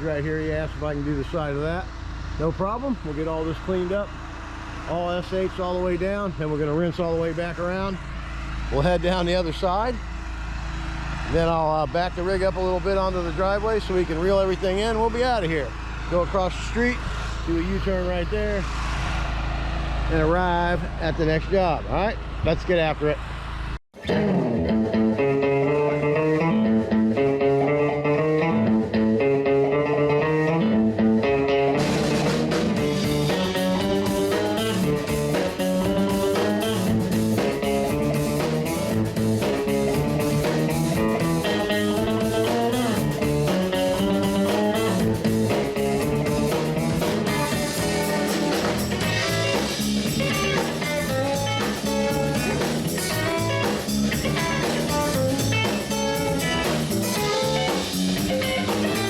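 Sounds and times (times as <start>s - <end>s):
plucked guitar: 24.0s - 59.0s
drums and cymbals: 31.8s - 59.0s.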